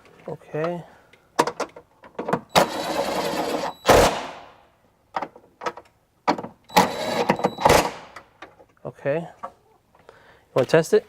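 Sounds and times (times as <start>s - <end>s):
power window motor whirring: 6.7s - 7.9s.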